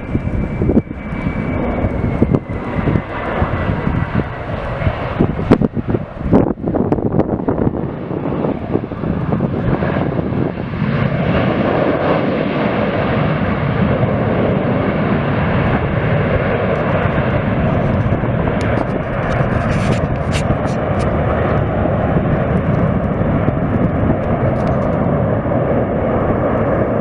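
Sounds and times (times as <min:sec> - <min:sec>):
airliner engines rushing: 0:00.0 - 0:27.0.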